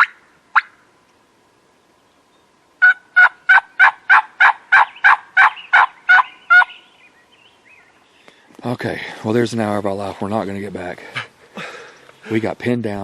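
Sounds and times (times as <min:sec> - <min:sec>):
wild turkey yelping: 0:00.0 - 0:00.9, 0:02.8 - 0:08.4.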